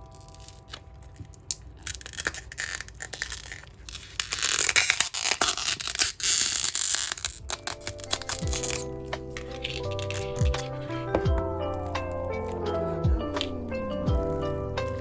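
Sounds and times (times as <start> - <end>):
crackling and crinkling: 0.0 - 15.0.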